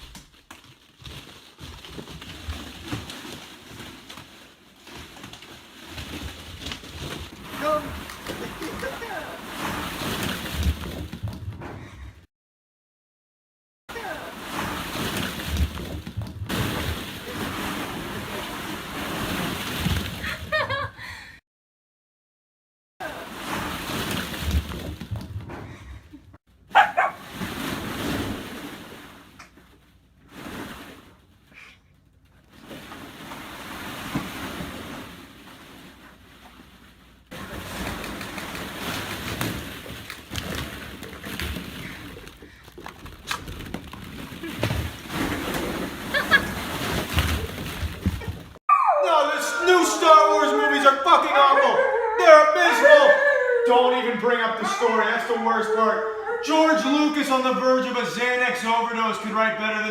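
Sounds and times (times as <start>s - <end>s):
rushing sloshing water: 2.4s - 11.4s, 14.0s - 20.4s, 23.0s - 25.2s, 26.7s - 29.7s, 32.5s - 42.9s, 43.6s - 48.6s
dog crying: 26.8s - 27.2s, 48.7s - 56.9s.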